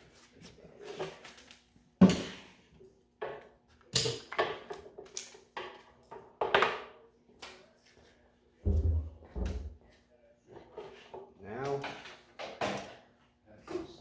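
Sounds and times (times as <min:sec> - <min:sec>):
tools knocking and clanking: 0:08.7 - 0:09.8.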